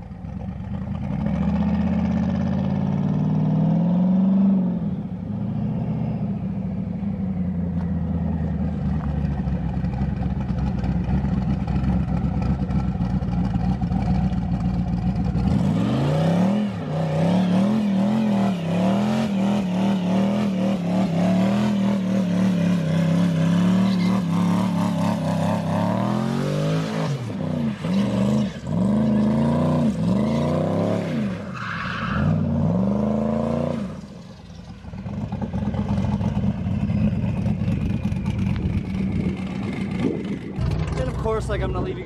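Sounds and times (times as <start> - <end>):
pickup engine revving: 15.2 - 34.0, 35.0 - 42.0.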